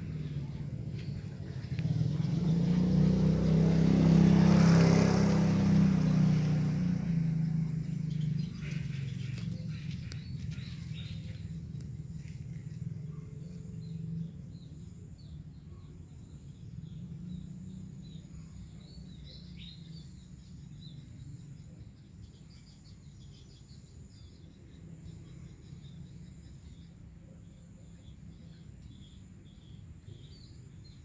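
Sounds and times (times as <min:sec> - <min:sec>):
low steady rumble: 0:00.0 - 0:03.2, 0:06.3 - 0:19.3
small birds chirping: 0:00.0 - 0:31.0.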